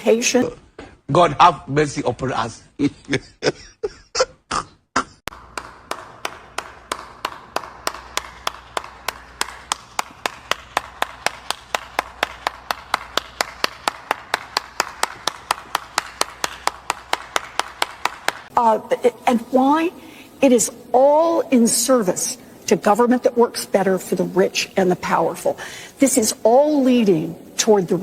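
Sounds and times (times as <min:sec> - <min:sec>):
person clapping: 0:05.3 - 0:18.5.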